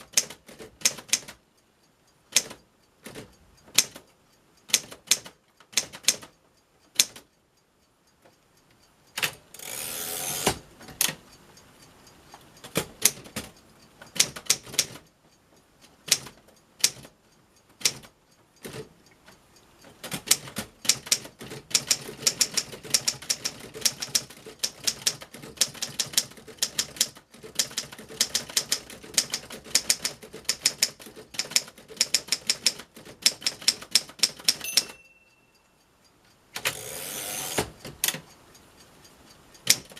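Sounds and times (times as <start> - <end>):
typewriter keystrokes: 0.0 - 1.4, 2.3 - 4.1, 4.7 - 6.3, 6.9 - 7.3, 12.6 - 13.5, 14.1 - 15.1, 16.1 - 17.2, 17.8 - 18.9, 20.0 - 35.0, 39.6 - 39.9
typewriter rasp: 20.0 - 34.6.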